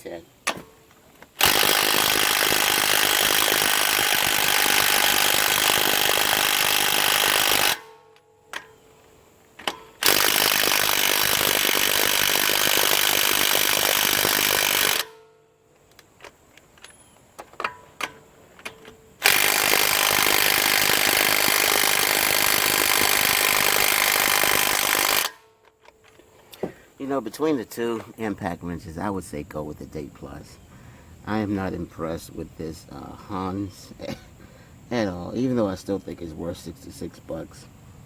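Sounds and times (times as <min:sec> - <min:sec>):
impact wrench hammering lug nuts: 0:00.5 - 0:08.8, 0:09.6 - 0:15.2, 0:17.4 - 0:25.8.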